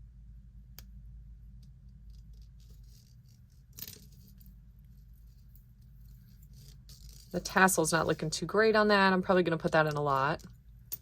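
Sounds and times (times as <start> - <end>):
jewelry clicking and clinking: 2.1 - 4.6, 9.7 - 11.0.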